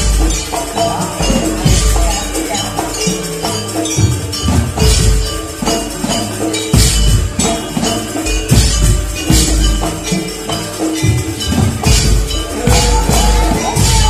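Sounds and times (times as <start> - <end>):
heavy drum strokes: 0.0 - 14.0
jingling percussion: 0.0 - 14.0
ringing gong-chime tones: 0.0 - 14.0.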